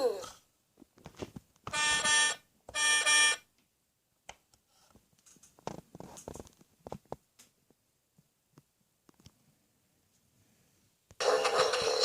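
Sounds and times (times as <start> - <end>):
toy electronic buzzing beeps: 1.8 - 3.4.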